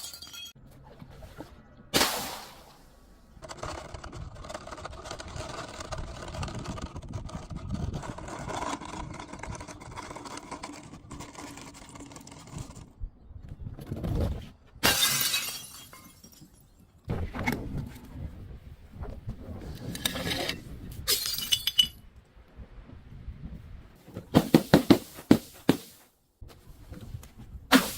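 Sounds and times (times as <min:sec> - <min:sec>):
glass bottle shattering: 0:00.0 - 0:00.6, 0:14.8 - 0:16.7, 0:21.1 - 0:22.0
glass crunching and crackling: 0:00.0 - 0:00.6
sharp cracks: 0:02.0 - 0:02.9.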